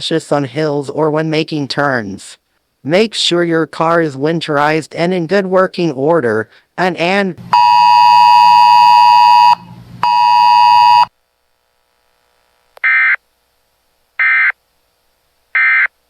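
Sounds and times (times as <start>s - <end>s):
electronic buzzer tone: 7.5s - 11.1s, 12.8s - 13.2s, 14.2s - 14.6s, 15.6s - 15.9s.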